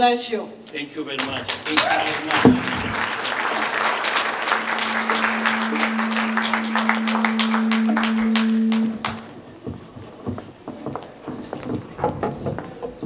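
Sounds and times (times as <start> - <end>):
audience applauding: 1.1 - 9.3
steady low tone: 2.3 - 9.8.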